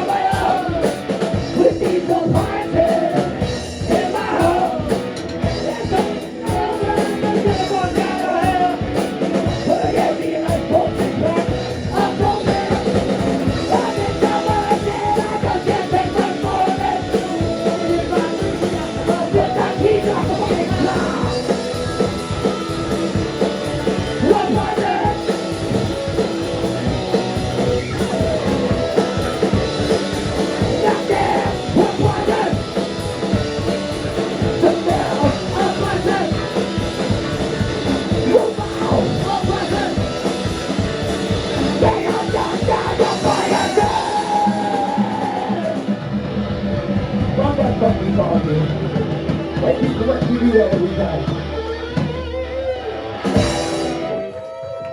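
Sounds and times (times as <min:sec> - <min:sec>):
person singing: 0:00.0 - 0:22.0, 0:23.9 - 0:25.5, 0:30.6 - 0:33.3, 0:34.2 - 0:37.1, 0:38.1 - 0:40.5, 0:41.6 - 0:46.0
rock band playing live: 0:00.0 - 0:54.9.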